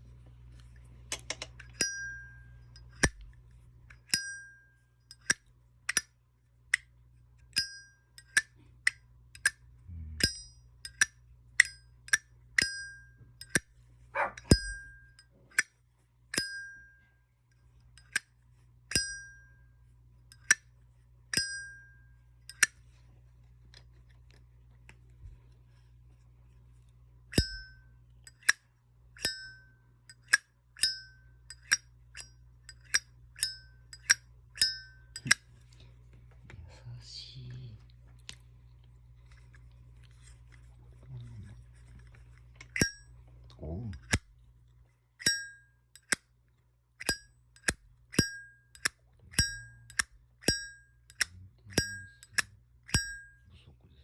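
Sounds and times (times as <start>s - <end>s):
metallic ring of lighter: 1.5s - 3.3s, 4.0s - 6.1s, 7.5s - 9.6s, 10.2s - 13.7s, 14.4s - 15.7s, 16.3s - 17.1s, 18.0s - 19.7s, 20.3s - 20.7s, 21.3s - 22.8s, 27.3s - 28.6s, 29.2s - 35.5s, 42.7s - 43.1s, 45.2s - 46.3s, 47.0s - 53.5s.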